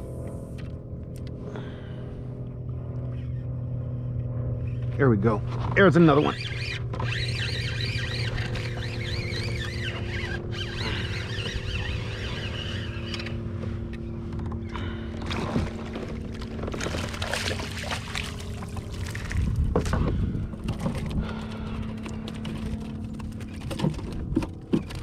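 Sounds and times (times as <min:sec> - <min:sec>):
steady low hum: 0:00.0 - 0:25.0
water splashing and sloshing: 0:06.5 - 0:25.0.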